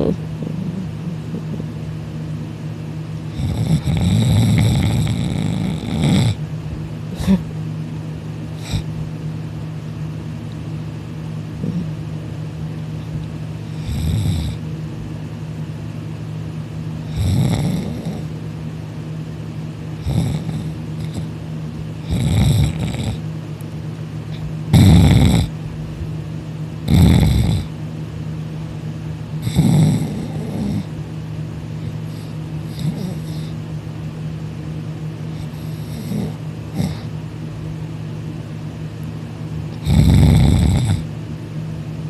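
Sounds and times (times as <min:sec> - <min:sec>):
steady low hum: 0:00.0 - 0:42.0
person snoring loudly: 0:03.3 - 0:06.4, 0:07.1 - 0:07.5, 0:08.6 - 0:09.0, 0:11.6 - 0:12.0, 0:13.7 - 0:14.6, 0:17.1 - 0:18.3, 0:20.0 - 0:21.3, 0:22.0 - 0:23.2, 0:24.7 - 0:25.5, 0:26.8 - 0:27.7, 0:29.4 - 0:30.9, 0:32.0 - 0:33.6, 0:35.3 - 0:37.1, 0:39.8 - 0:41.1.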